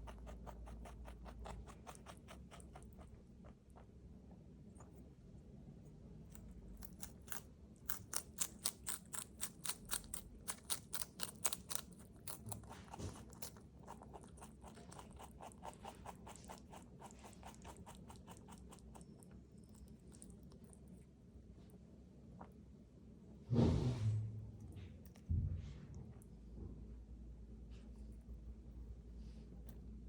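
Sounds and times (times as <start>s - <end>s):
rabbit chewing crunchy greens: 0.0s - 22.9s.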